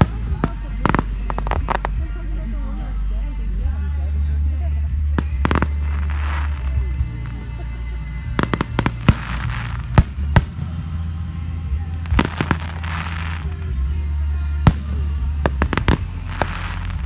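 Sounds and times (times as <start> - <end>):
fireworks bursting with bangs: 0.0 - 2.2, 5.2 - 13.7, 14.6 - 17.0
low rumble: 0.0 - 17.0.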